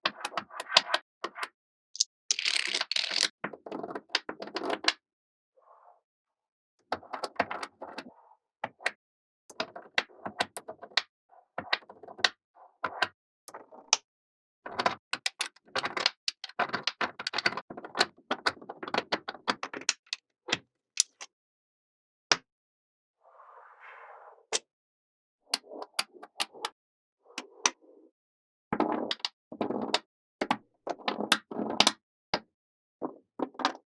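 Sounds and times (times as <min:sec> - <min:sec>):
magnetic balls clicking together: 0:02.0 - 0:03.3.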